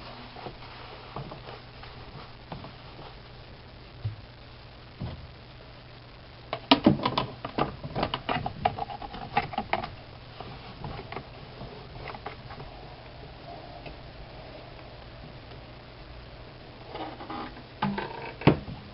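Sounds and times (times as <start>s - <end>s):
plastic washing machine clicks and knocks: 6.6s - 8.7s, 17.8s - 18.8s.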